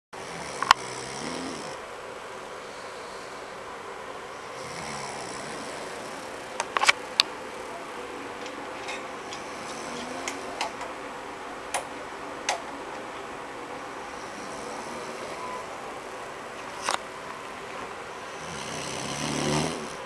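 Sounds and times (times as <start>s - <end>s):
man snoring faintly: 0.2s - 1.8s, 2.5s - 6.6s, 9.1s - 10.8s, 13.7s - 16.1s, 18.1s - 20.0s
steady room hum: 0.2s - 20.0s.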